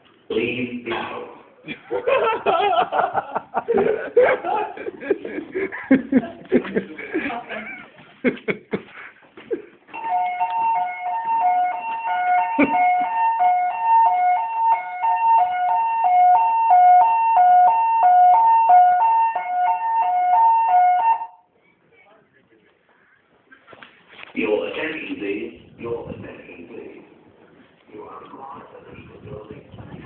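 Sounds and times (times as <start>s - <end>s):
fire alarm two-tone evacuation tone: 9.9s - 21.5s.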